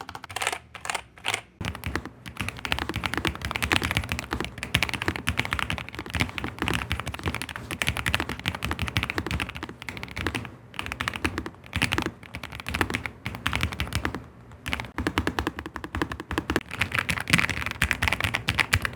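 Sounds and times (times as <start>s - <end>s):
fast mechanical keyboard typing: 0.0s - 18.9s.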